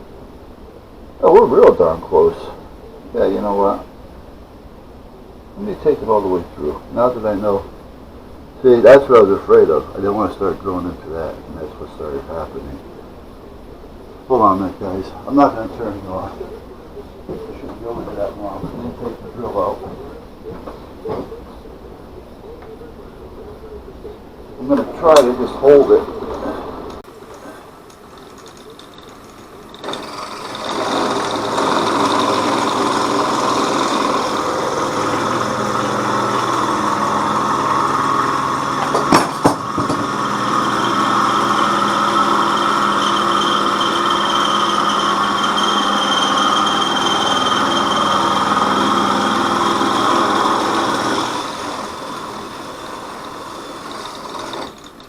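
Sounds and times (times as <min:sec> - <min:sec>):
electric drill drilling: 0:28.4 - 0:55.0
sharp knocks: 0:38.8 - 0:40.2.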